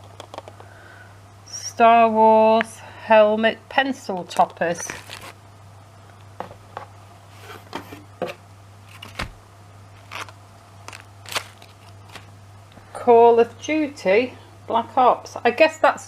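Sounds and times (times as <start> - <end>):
steady low hum: 0.0 - 16.0
packaging clicks and rustles: 4.3 - 5.4, 10.0 - 12.3.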